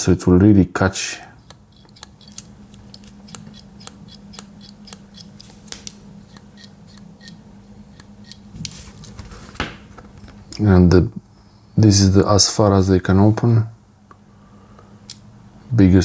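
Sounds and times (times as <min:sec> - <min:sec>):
metal pliers clicking: 0:01.4 - 0:05.5.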